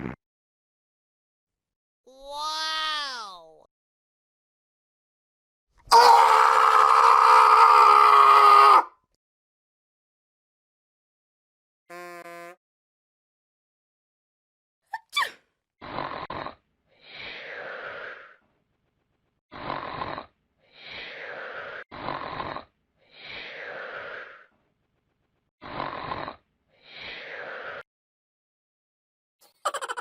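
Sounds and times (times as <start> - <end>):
person snoring: 15.8 - 18.4, 19.5 - 24.5, 25.6 - 27.9.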